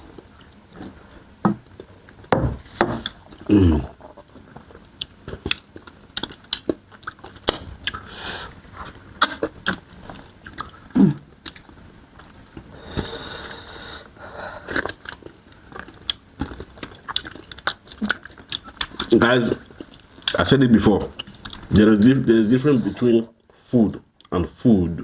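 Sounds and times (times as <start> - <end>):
wet chewing and biting: 4.6 - 8.1, 14.7 - 19.2.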